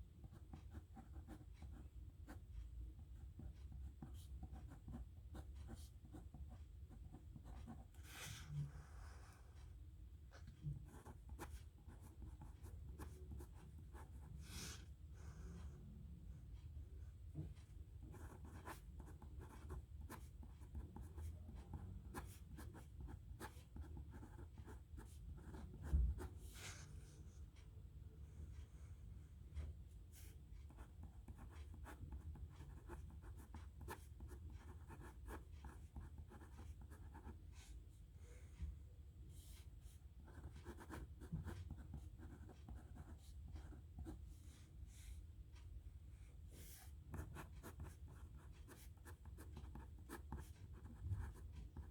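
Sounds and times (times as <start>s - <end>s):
nib pen scratching paper: 30.7s - 37.4s.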